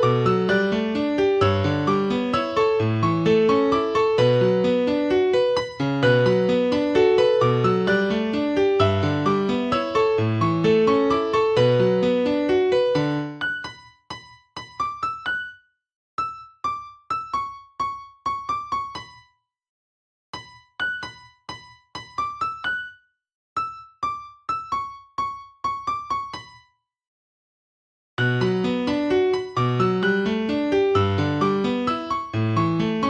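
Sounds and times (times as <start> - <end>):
high keyboard melody: 0.0 - 15.6, 28.2 - 33.0.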